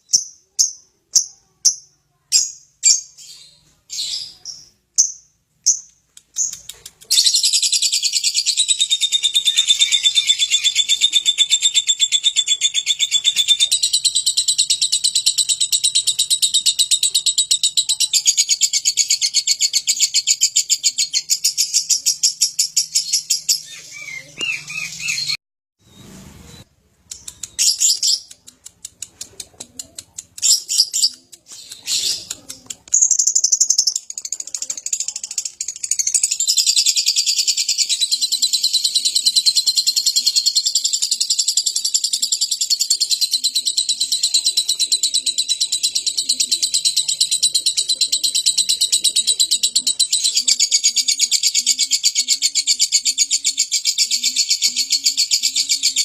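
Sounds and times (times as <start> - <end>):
lovebird chirps: 0.0 - 29.3, 30.4 - 56.0
lovebird pulsing chatter: 27.2 - 56.0.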